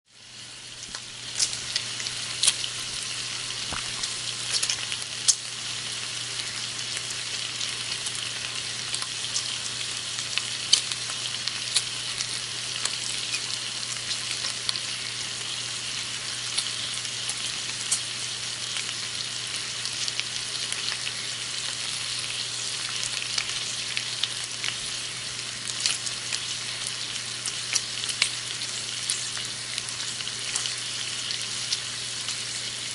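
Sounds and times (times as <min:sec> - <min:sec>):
bacon sizzling in a pan: 0:00.1 - 0:32.9
fat popping and crackling: 0:03.6 - 0:05.4.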